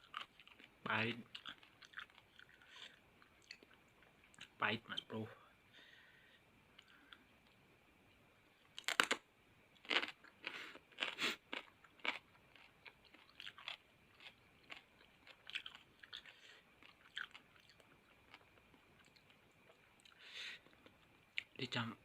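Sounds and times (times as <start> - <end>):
person chewing: 0.0 - 4.5, 9.8 - 21.5
crunching bites of fruit: 8.8 - 9.2, 9.8 - 18.4.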